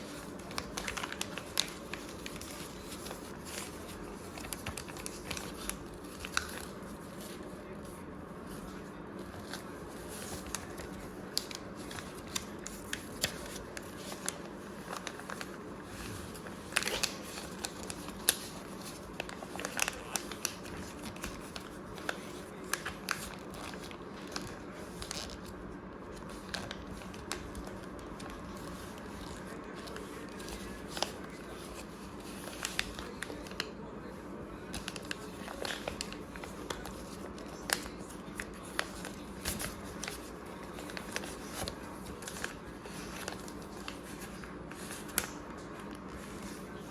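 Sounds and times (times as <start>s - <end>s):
paper crinkling: 0.0s - 46.9s.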